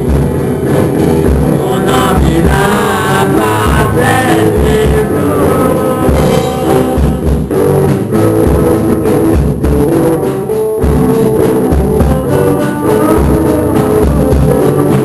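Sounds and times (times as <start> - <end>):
drum kit playing: 0.0 - 15.0
electric guitars playing: 0.0 - 15.0
person singing: 1.5 - 8.9, 10.8 - 15.0.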